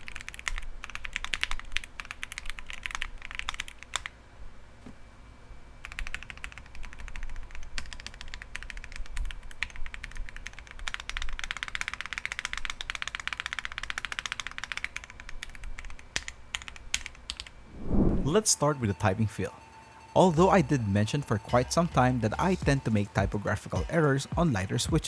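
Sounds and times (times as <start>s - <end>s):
mechanical keyboard typing: 0.0s - 4.1s, 5.8s - 17.5s.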